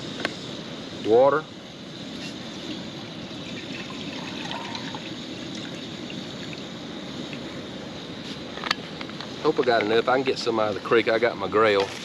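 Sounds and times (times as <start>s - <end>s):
water pouring into a cup: 3.5s - 6.6s.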